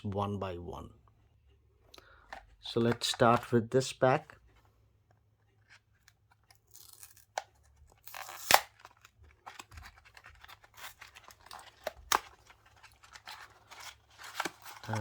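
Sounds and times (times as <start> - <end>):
packaging tearing and rustling: 5.7 - 15.0.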